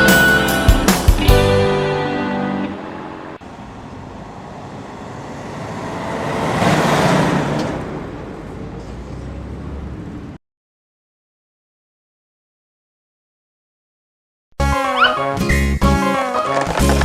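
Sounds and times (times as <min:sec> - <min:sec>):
car driving past: 0:01.7 - 0:10.4.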